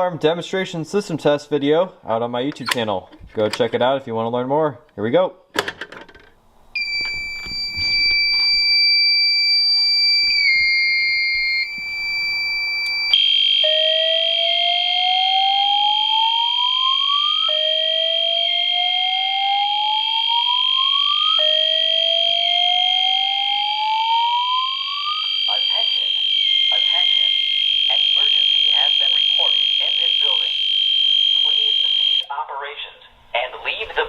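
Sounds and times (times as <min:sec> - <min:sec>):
steady high alarm tone: 0:06.8 - 0:32.3.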